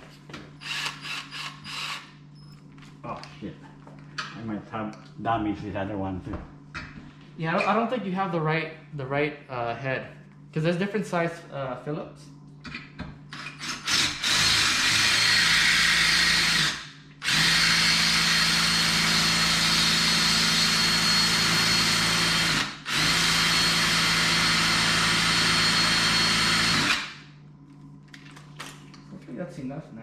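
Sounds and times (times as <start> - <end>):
power drill running: 0.6 - 2.2, 13.3 - 27.2.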